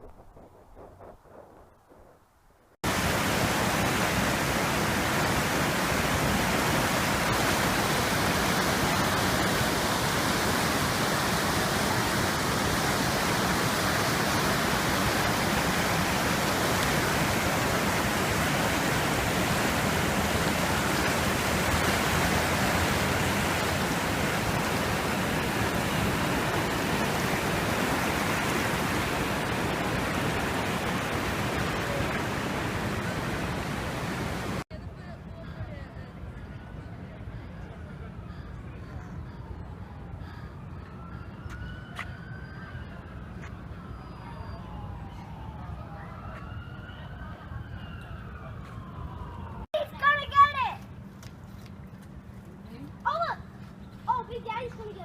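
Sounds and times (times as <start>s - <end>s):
rush of flowing water: 2.8s - 34.6s.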